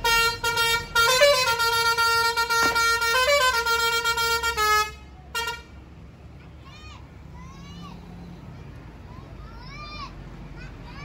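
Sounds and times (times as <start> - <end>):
musical bus horn playing a tune: 0.0 - 5.8.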